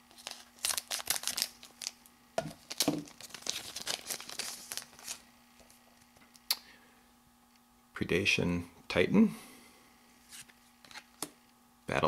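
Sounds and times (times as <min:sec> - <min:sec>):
foil wrapper crinkling: 0:00.0 - 0:05.8.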